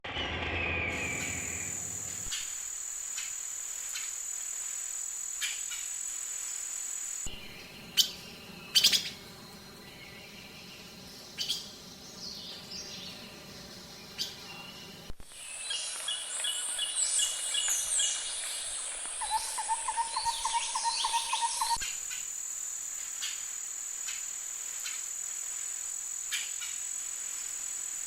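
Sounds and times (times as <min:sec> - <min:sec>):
steady high-pitched whine: 0:00.0 - 0:21.8
small birds chirping: 0:07.3 - 0:22.2.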